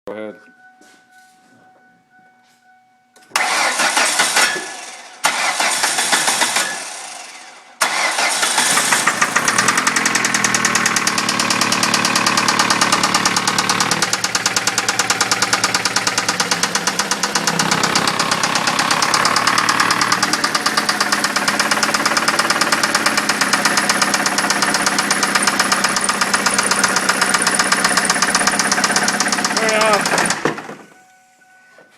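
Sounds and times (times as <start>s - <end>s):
car engine cranking: 3.2s - 31.0s
engine running with loud knock: 7.9s - 30.9s.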